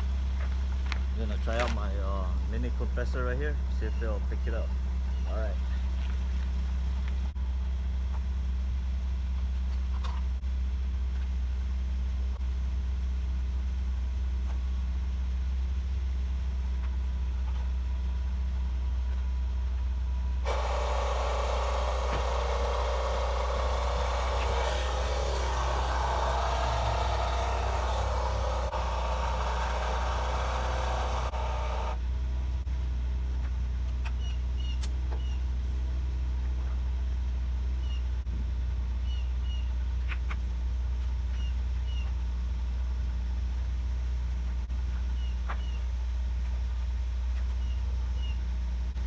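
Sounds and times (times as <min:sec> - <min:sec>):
air compressor running: 0:20.4 - 0:32.0
truck engine idling: 0:20.5 - 0:32.0.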